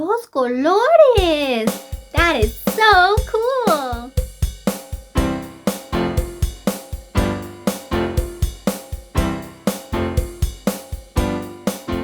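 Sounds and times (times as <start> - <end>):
steady drum beat: 1.2 - 12.0
keyboard chords: 5.2 - 8.6, 9.2 - 12.0.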